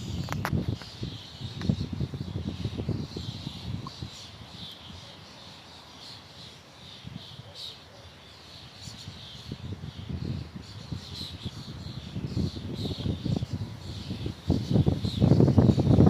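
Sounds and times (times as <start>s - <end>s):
wind gusting on microphone: 0.0s - 7.5s, 8.6s - 16.0s
small birds chirping: 0.0s - 16.0s.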